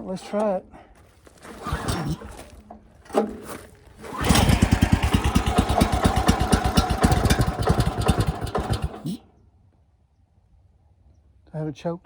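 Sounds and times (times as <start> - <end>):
small engine running roughly: 1.6 - 2.3, 4.0 - 9.2.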